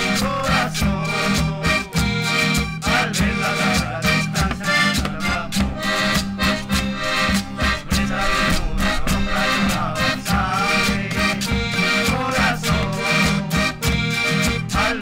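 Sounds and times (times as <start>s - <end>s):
reedy melody line: 0.0s - 14.9s
steady pulsed beat: 0.0s - 15.0s.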